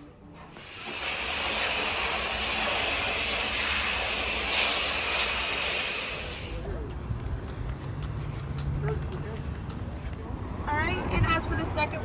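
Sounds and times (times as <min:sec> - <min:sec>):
loud hissing noise: 0:00.5 - 0:06.7.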